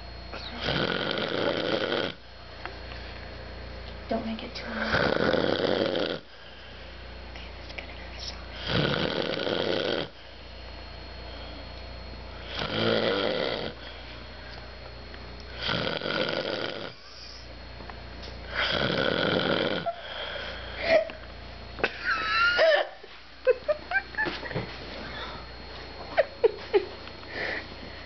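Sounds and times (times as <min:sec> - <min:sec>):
man snoring loudly: 0:00.6 - 0:02.2, 0:04.8 - 0:06.3, 0:08.6 - 0:10.2, 0:12.4 - 0:13.8, 0:15.5 - 0:17.0, 0:18.5 - 0:20.1.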